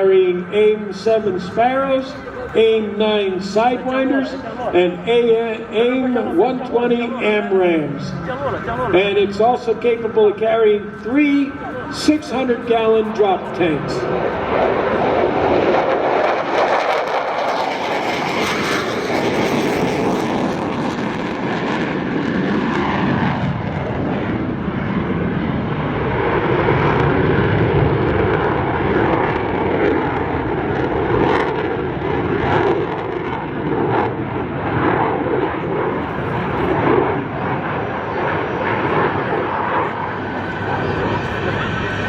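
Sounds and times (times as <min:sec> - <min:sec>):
fighter jet engine noise: 0:00.0 - 0:42.0.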